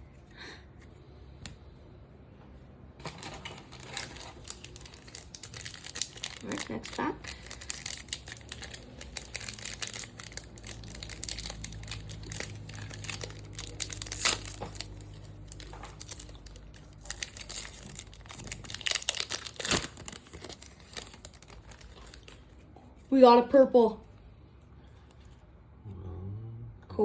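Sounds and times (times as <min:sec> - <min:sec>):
wrapper crinkling and tearing: 0:03.0 - 0:23.1.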